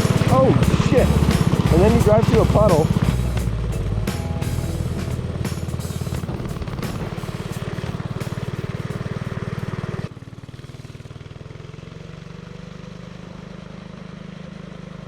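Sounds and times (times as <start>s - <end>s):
small single-cylinder engine running: 0.0s - 15.0s.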